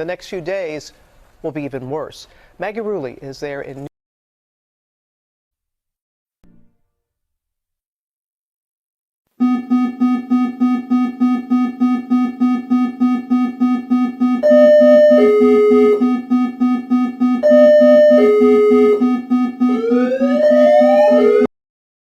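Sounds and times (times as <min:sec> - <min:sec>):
rising synthesizer glides: 0:09.4 - 0:21.5.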